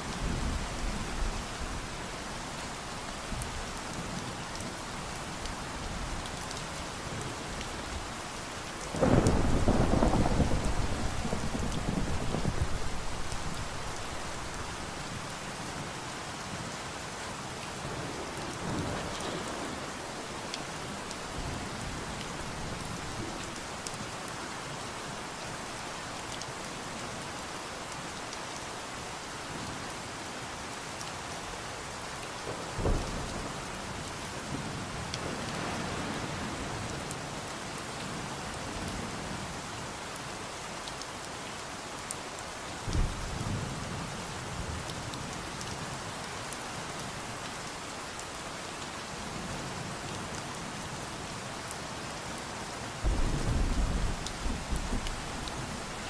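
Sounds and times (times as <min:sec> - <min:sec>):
steady rain: 0:00.0 - 0:56.0
thunder rumbling: 0:09.0 - 0:15.4, 0:53.0 - 0:56.0.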